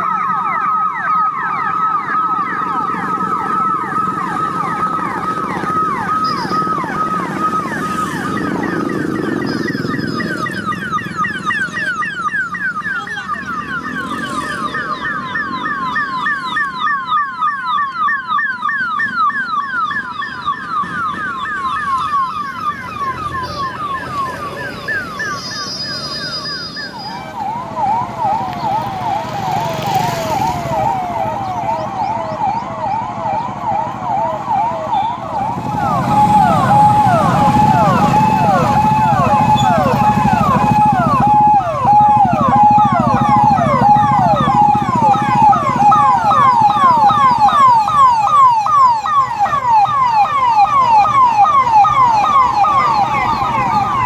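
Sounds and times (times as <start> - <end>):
police sirens yelping: 0.0 - 54.0
low rumble of vehicle engines: 19.3 - 54.0.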